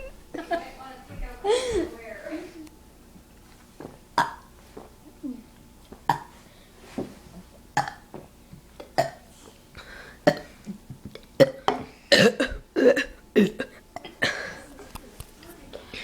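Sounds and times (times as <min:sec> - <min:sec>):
person burping: 0:11.4 - 0:14.3.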